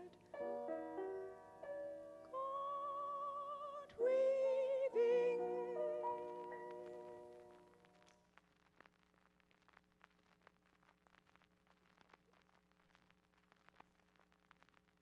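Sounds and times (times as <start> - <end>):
female voice singing with vibrato: 2.2 - 6.6.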